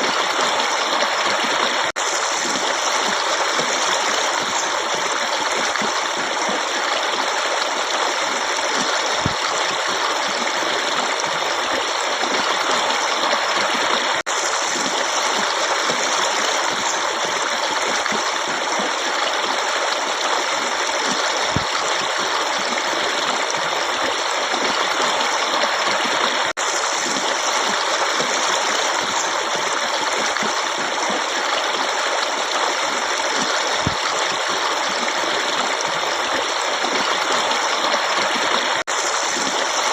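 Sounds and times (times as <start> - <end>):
stream water rushing: 0.0 - 39.9.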